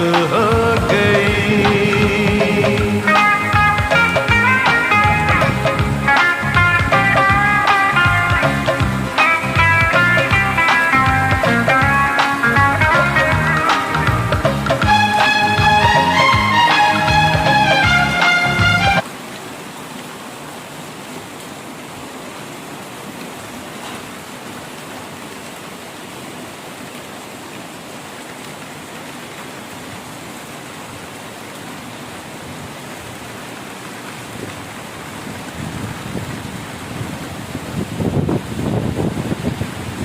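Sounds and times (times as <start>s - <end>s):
steady rain falling: 0.0s - 40.0s.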